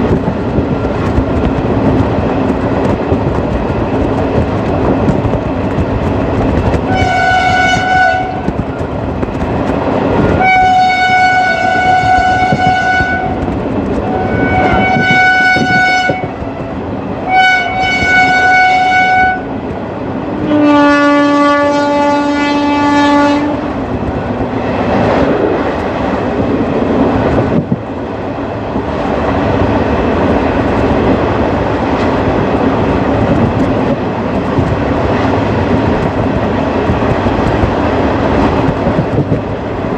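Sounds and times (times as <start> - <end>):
train running on track: 0.0 - 39.9
locomotive horn blasts: 6.9 - 8.5, 10.4 - 13.4, 14.1 - 19.5, 20.4 - 23.7.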